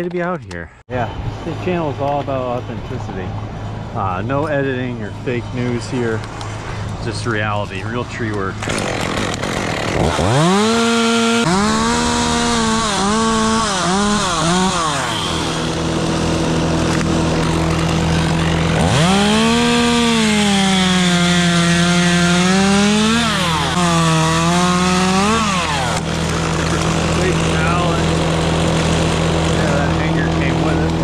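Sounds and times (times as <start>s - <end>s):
engine humming: 0.0s - 31.0s
chainsaw revving and cutting wood: 7.8s - 31.0s.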